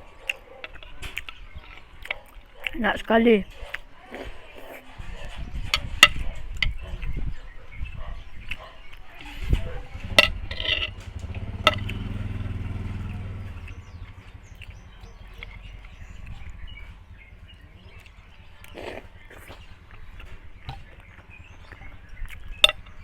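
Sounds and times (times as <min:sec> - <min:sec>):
mouth eating noises: 0:00.0 - 0:10.7, 0:11.3 - 0:16.9, 0:17.5 - 0:23.0
sharp clicks and taps: 0:10.1 - 0:12.1.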